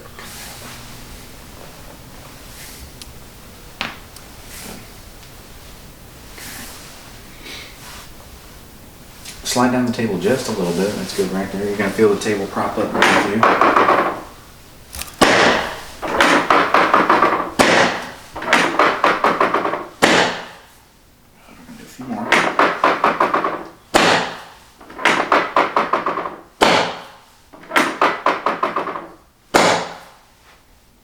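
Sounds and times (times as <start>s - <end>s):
drop table sections snapping down: 9.9s - 20.6s, 22.2s - 30.1s.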